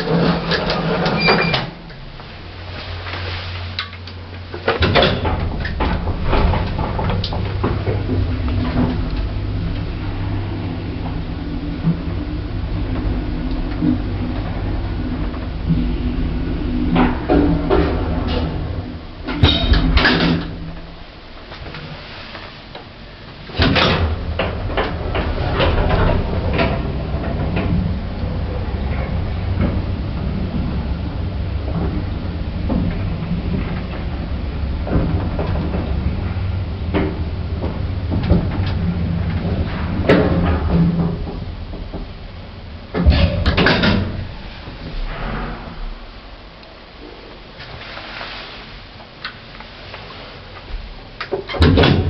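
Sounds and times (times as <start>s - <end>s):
lift doors sliding and clunking: 0.0s - 52.0s.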